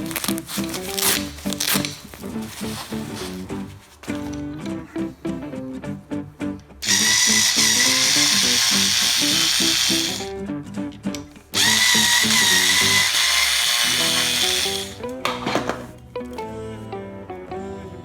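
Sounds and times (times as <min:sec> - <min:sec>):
background music: 0:00.0 - 0:18.0
electric drill whining: 0:06.8 - 0:10.3, 0:11.5 - 0:15.0.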